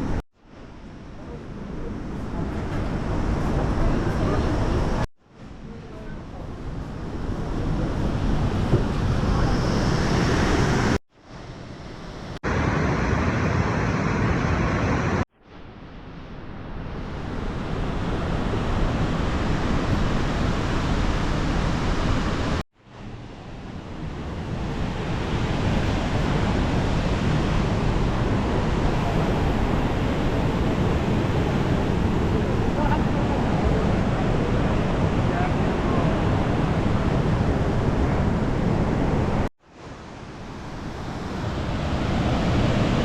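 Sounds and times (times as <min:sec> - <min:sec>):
waterfall roar: 0:24.0 - 0:43.0.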